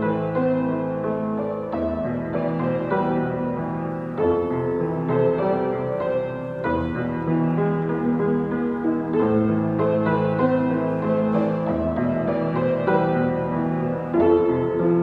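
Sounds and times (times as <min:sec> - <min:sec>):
slow piano piece: 0:00.0 - 0:15.0.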